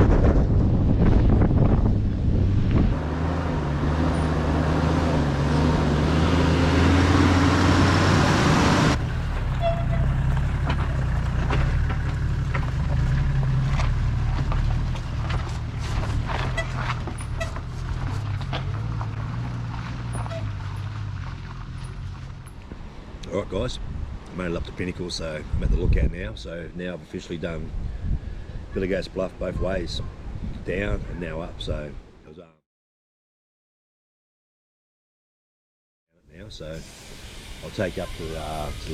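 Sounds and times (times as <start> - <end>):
vehicle engine humming: 0.2 - 23.3
loud hiss: 36.4 - 38.9.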